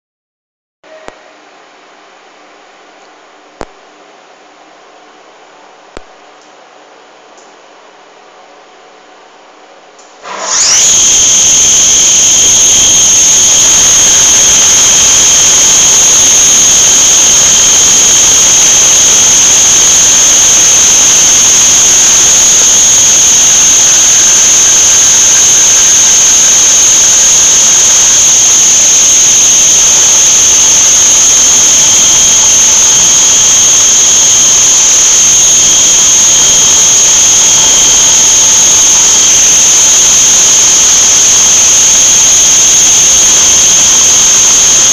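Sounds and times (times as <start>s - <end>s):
milling machine spindle whine: 10.3s - 44.9s.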